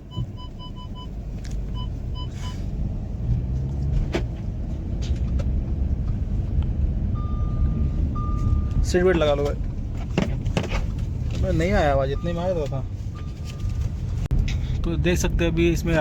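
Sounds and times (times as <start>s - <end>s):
car warning chime beeps: 0.0s - 2.6s, 7.1s - 9.3s, 11.5s - 13.9s
car cabin rumble: 0.0s - 16.0s.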